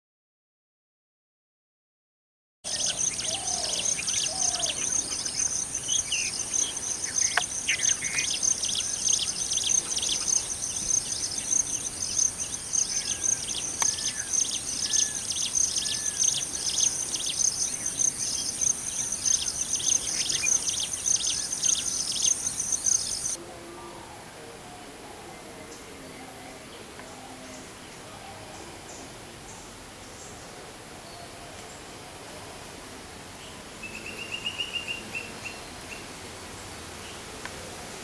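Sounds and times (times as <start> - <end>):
faint bird chirps: 2.7 - 23.4
insect chorus trilling: 2.7 - 23.4.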